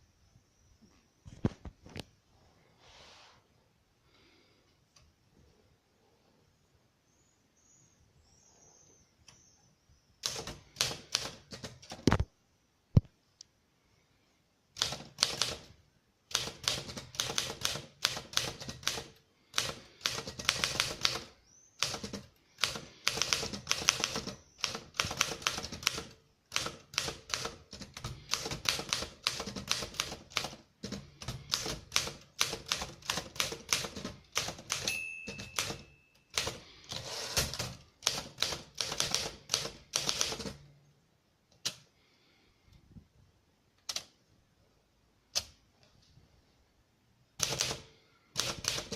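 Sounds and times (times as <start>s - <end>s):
manual typewriter key strikes: 16.3s - 36.6s
short ringing tone: 34.9s - 36.3s.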